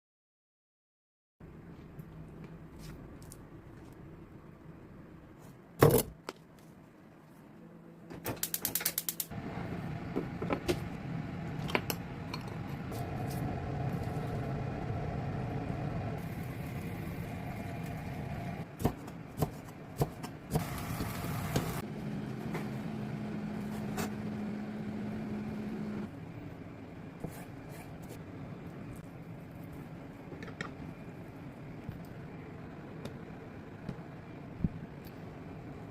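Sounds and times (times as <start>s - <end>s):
steady hum and hiss: 1.5s - 22.6s.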